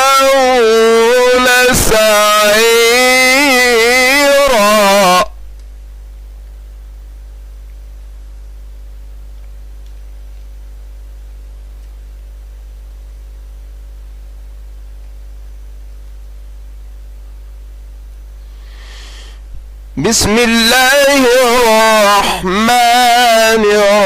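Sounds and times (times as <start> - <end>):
electrical mains hum: 0.0 - 24.0.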